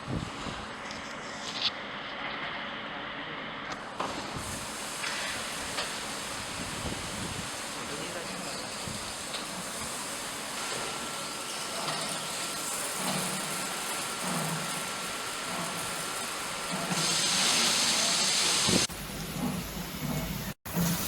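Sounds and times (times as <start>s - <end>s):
car wash water spray and machinery: 3.7s - 21.0s
loud hiss of spray: 4.4s - 18.9s.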